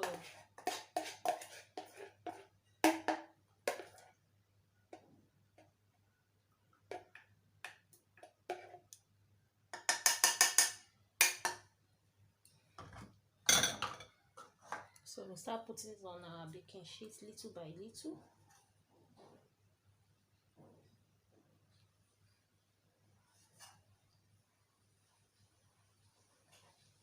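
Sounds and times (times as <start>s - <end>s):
kitchen utensils clinking: 13.5s - 14.2s.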